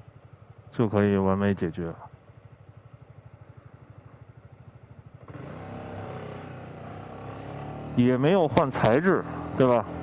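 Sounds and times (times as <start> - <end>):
scooter engine idling and revving: 0.0 - 10.0.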